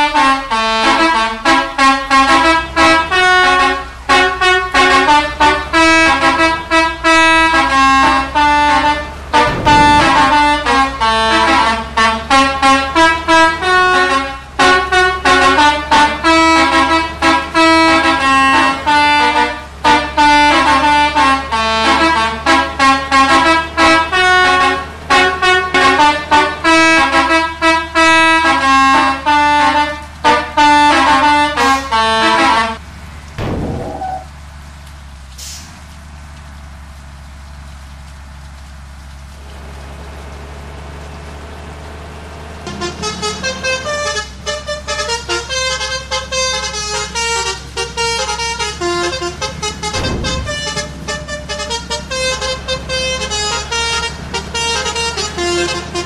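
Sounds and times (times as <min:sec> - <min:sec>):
multi-tone bus air horn melody: 0:00.0 - 0:32.8, 0:33.8 - 0:34.3, 0:42.6 - 0:56.0
short low rumble: 0:09.4 - 0:11.1.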